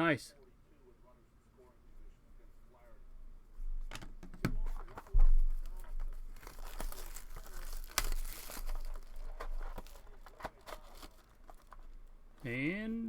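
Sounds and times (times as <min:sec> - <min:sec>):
plastic wrapping crinkling: 0:03.9 - 0:12.7.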